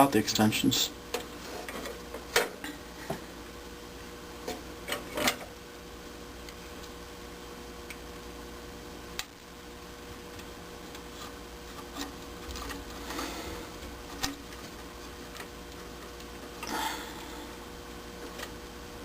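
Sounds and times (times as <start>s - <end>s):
faint hum: 0.0s - 19.0s.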